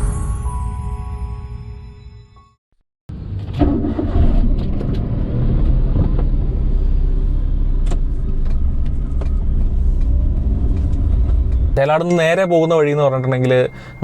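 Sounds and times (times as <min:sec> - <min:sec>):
car engine and road rumble: 0:03.1 - 0:14.0.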